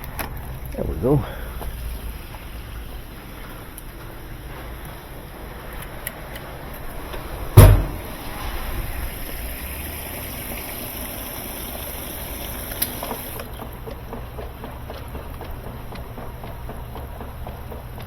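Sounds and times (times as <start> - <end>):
washing machine running: 0.0 - 18.0
loud thump: 7.5 - 8.4.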